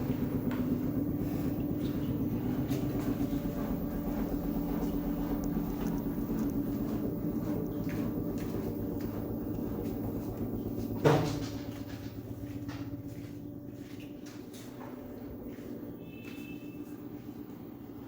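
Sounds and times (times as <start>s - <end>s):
washing machine running: 0.0s - 18.0s.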